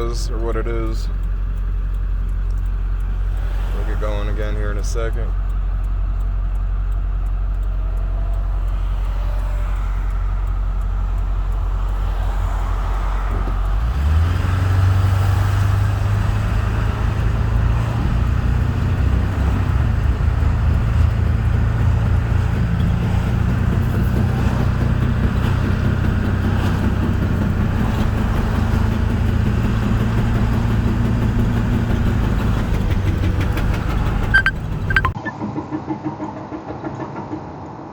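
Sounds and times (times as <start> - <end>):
sharp clicks: 0.0 - 35.3
pickup truck engine: 0.0 - 37.2.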